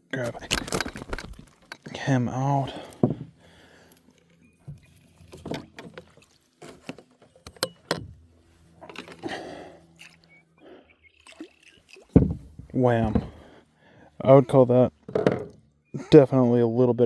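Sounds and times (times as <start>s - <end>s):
handling gear knocks and rattles: 0.2s - 1.9s.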